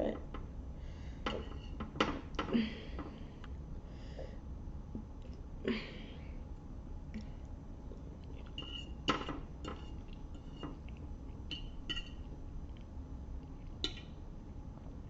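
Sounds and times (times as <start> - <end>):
fork clinking against a plate: 8.5 - 10.8, 11.5 - 12.3.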